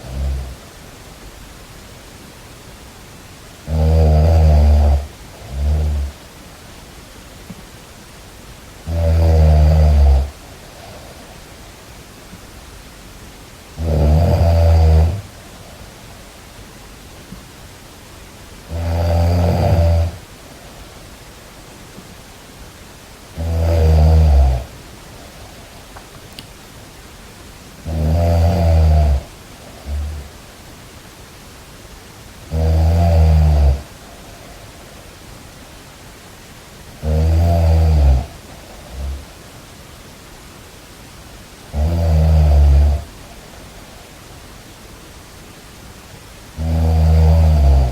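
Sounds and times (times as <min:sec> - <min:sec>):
low snores: 0:00.0 - 0:00.6, 0:03.6 - 0:06.2, 0:08.8 - 0:11.4, 0:13.8 - 0:15.4, 0:18.7 - 0:20.2, 0:23.3 - 0:24.8, 0:27.8 - 0:30.4, 0:32.4 - 0:34.0, 0:37.0 - 0:39.4, 0:41.7 - 0:43.2, 0:46.6 - 0:47.9
steady background hiss: 0:00.0 - 0:47.9.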